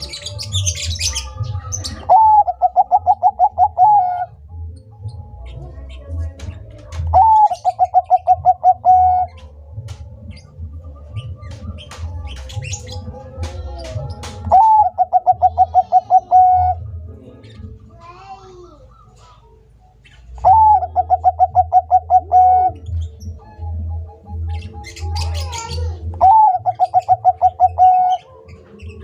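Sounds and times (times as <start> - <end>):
dove pulsed cooing song: 0.0 - 17.8, 20.0 - 29.0
birds chirping: 0.0 - 29.0.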